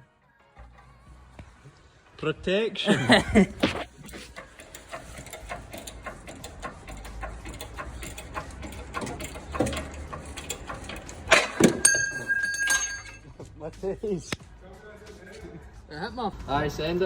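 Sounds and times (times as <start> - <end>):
press clicking and creaking: 3.5 - 13.2.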